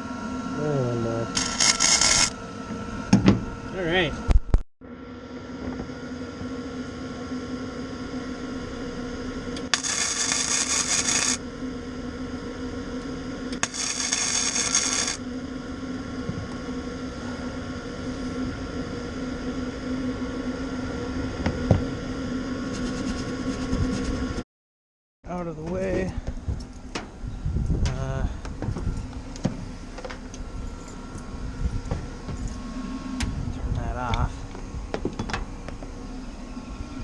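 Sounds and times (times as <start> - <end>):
machine hum: 0.0 - 24.4, 25.2 - 37.0
welding crackle bursts: 1.4 - 2.4, 9.7 - 11.4, 13.6 - 15.2.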